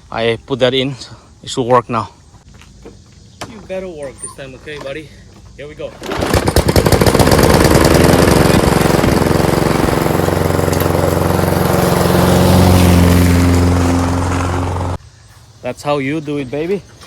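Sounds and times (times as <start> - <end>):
lawn mower engine running: 5.9 - 15.0.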